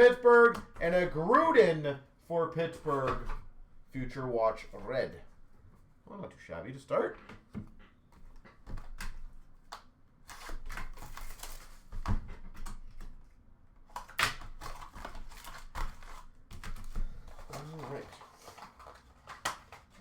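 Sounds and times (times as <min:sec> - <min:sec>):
cards and wrapper rustling: 0:00.0 - 0:01.8, 0:09.8 - 0:12.0, 0:13.9 - 0:20.0.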